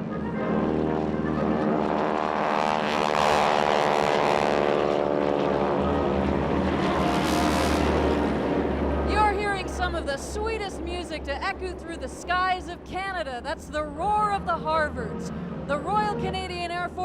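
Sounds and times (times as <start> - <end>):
propeller planes flying past: 0.0 - 17.0.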